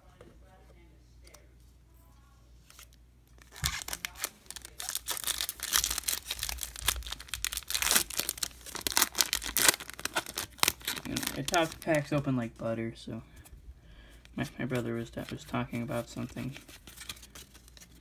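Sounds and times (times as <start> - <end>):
foil wrapper tearing and crinkling: 3.4 - 12.2.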